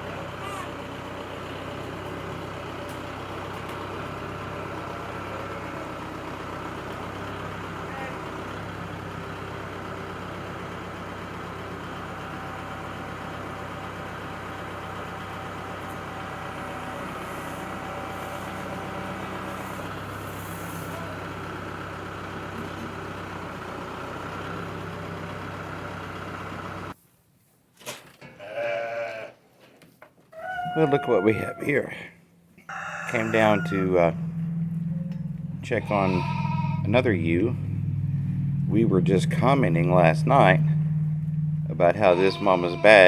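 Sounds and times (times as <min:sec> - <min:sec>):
vehicle engine running: 0:00.0 - 0:27.0, 0:31.7 - 0:43.0
sheep bleating: 0:07.8 - 0:08.4, 0:28.3 - 0:29.4, 0:35.7 - 0:37.1, 0:41.7 - 0:43.0
short animal call: 0:35.8 - 0:36.9.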